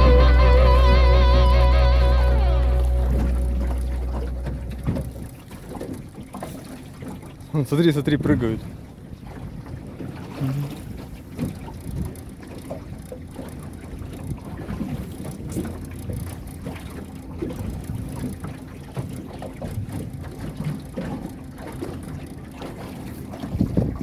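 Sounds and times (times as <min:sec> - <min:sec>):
motorboat engine hum: 0:00.0 - 0:24.0
water thumping against hull: 0:00.0 - 0:24.0
wind buffeting microphone: 0:19.6 - 0:24.0.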